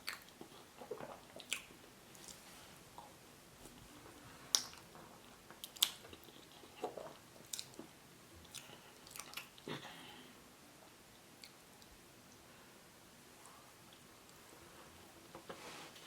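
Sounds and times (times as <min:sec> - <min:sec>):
faint close-up chewing: 0:00.0 - 0:12.4.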